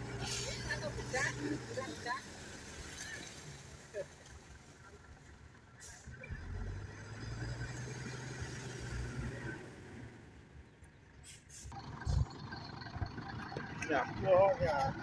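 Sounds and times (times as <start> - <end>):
heavy machine engine running: 11.7 - 15.0.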